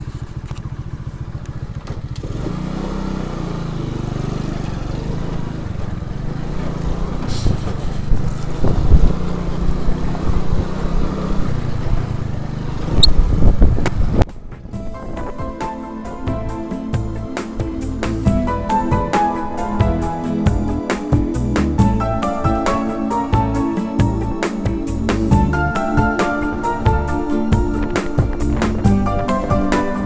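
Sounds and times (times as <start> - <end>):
moped engine running: 0.0 - 30.0
low gusty rumbles: 7.5 - 30.0.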